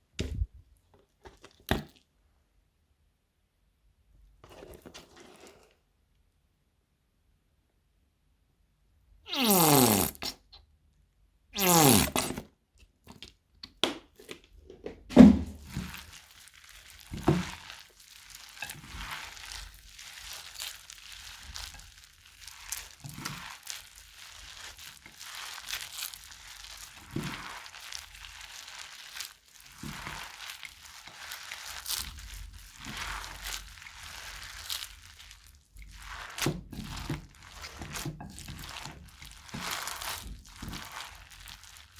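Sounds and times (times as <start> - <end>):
slime crinkling and crackling: 11.6 - 12.4, 15.5 - 41.9.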